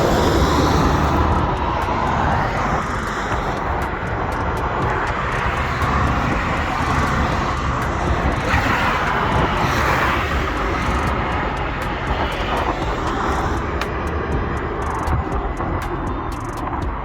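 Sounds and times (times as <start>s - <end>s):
tyre and wind noise: 0.0s - 17.0s
van engine running: 0.0s - 17.0s.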